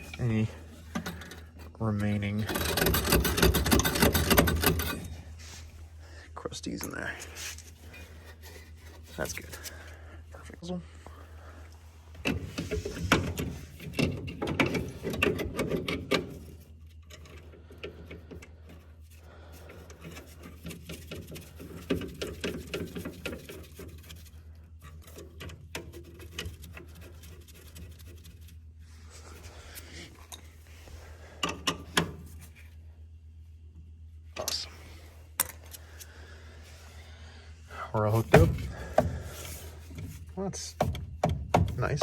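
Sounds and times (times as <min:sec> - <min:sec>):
tools clicking and scraping metal: 0:00.0 - 0:05.3, 0:06.8 - 0:09.9, 0:12.2 - 0:28.6, 0:35.3 - 0:36.1
steady low hum: 0:00.0 - 0:42.0.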